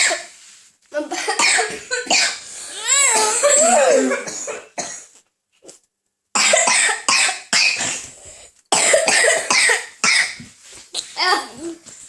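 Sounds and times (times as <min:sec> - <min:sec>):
person coughing harshly: 0:01.1 - 0:02.5, 0:03.1 - 0:05.2, 0:06.4 - 0:10.4.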